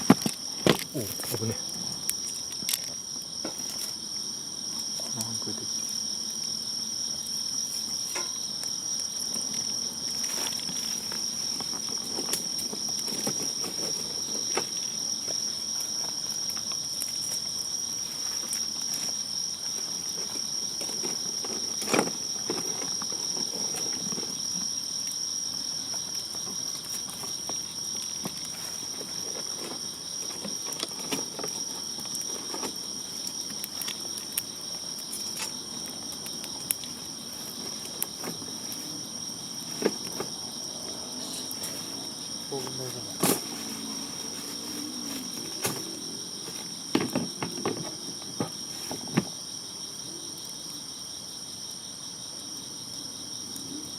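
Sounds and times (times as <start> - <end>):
campfire crackling and popping: 0.0 - 41.6
insects chirring: 0.0 - 53.9.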